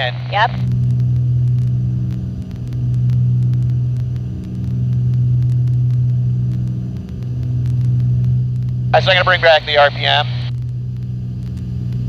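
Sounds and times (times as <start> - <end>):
twin piston aircraft engines droning: 0.0 - 4.0, 7.4 - 12.0.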